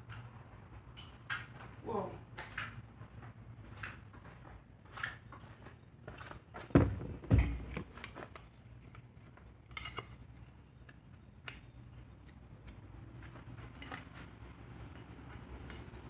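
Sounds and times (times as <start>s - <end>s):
heavy thumps: 6.7s - 7.9s.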